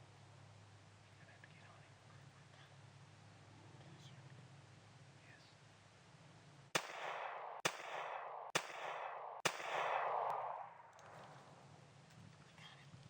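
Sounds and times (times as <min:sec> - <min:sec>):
rifle shots: 0:06.8 - 0:11.8.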